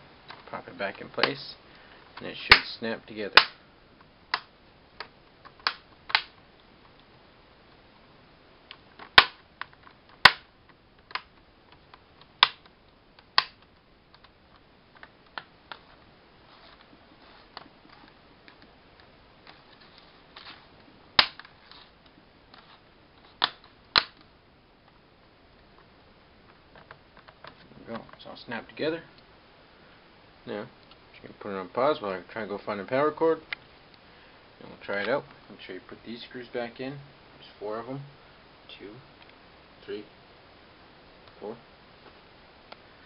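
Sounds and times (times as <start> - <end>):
plastic clips snapping into place: 13.3 - 14.3.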